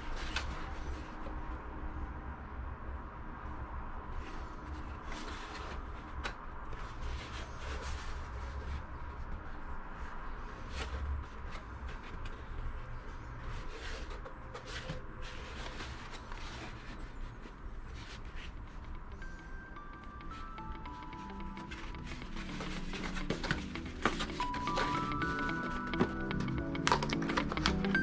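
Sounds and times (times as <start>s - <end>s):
rustling handling noises: 10.6s - 28.0s.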